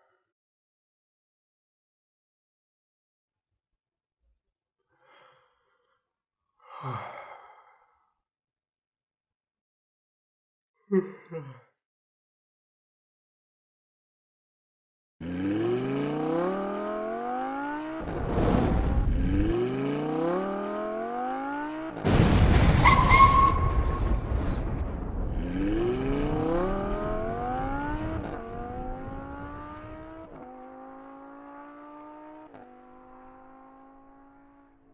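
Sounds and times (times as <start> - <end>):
car engine revving through gears: 15.2 - 22.2, 25.3 - 34.8
tyre squeal: 22.8 - 24.2.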